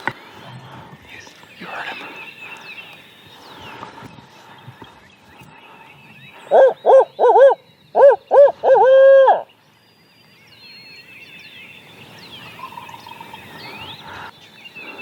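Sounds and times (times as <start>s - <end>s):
faint songbirds chirping: 0.0s - 15.0s
owl hooting: 6.4s - 9.5s.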